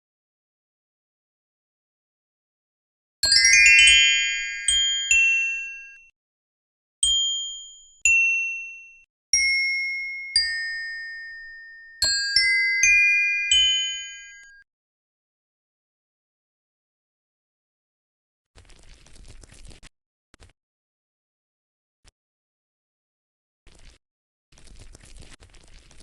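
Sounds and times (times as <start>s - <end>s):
bell-like chime tones: 3.2s - 6.1s, 7.0s - 14.6s.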